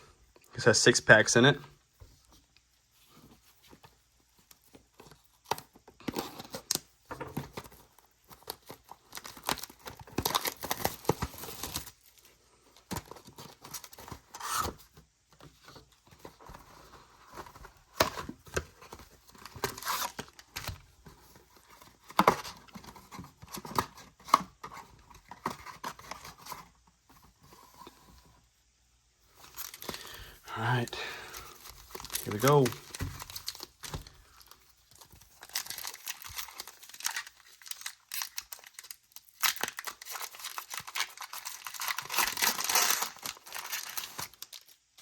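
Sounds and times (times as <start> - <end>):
packaging clicks and rustles: 3.3 - 26.8, 29.4 - 45.0
plastic wrap tearing and crinkling: 8.3 - 12.2, 31.5 - 45.0.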